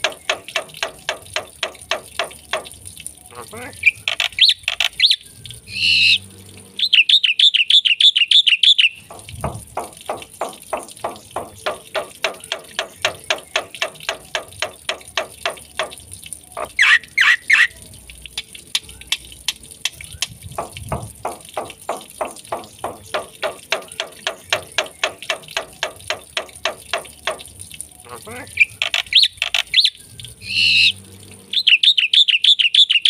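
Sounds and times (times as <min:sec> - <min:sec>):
starling chattering song: 0:03.2 - 0:06.2, 0:10.7 - 0:17.8, 0:28.0 - 0:33.0.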